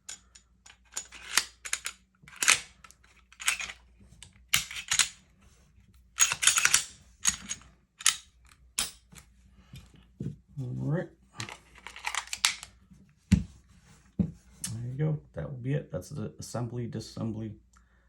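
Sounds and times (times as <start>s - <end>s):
metal parts sliding scrapes: 0.1s - 3.8s
pistol metal clicks: 6.2s - 9.0s.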